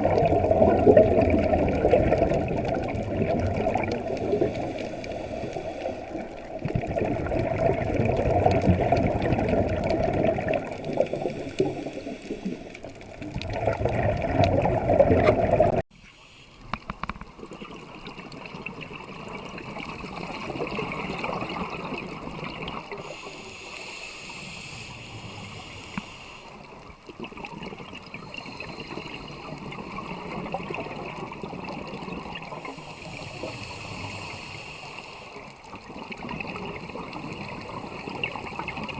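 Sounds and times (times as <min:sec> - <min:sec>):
bubbles gurgling underwater: 0:00.0 - 0:15.8, 0:16.8 - 0:23.1, 0:26.8 - 0:34.2, 0:35.6 - 0:38.9
diver breathing through regulator: 0:04.2 - 0:06.6, 0:10.9 - 0:12.9, 0:23.0 - 0:26.8, 0:28.2 - 0:30.0, 0:32.6 - 0:35.6.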